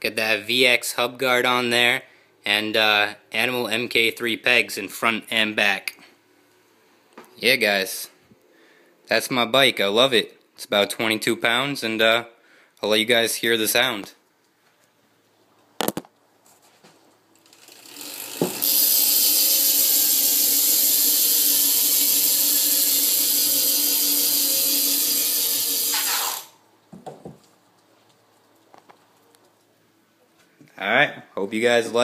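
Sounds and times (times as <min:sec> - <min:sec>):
bike hub ratcheting buzz: 0:17.4 - 0:26.6.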